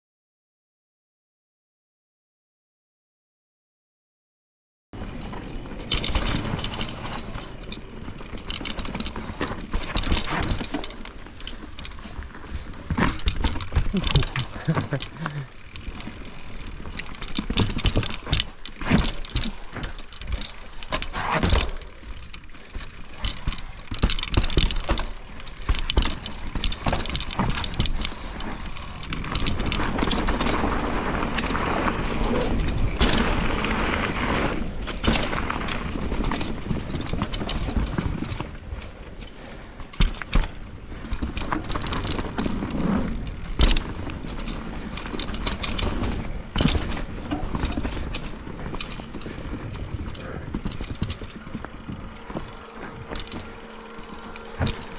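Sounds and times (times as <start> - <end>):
bike knocks and clatters: 5.0 - 54.9
tyre and wind rush: 42.0 - 53.9.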